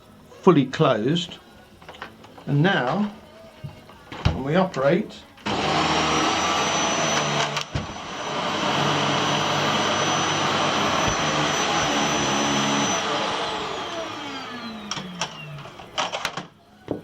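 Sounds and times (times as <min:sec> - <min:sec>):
vacuum cleaner motor whine: 0:05.4 - 0:16.5.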